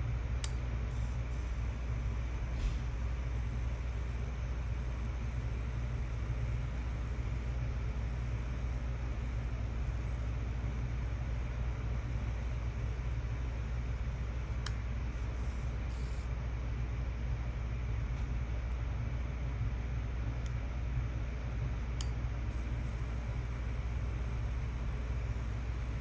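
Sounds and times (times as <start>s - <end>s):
low background rumble: 0.1s - 26.0s
faint click: 0.4s - 0.6s, 20.4s - 20.6s.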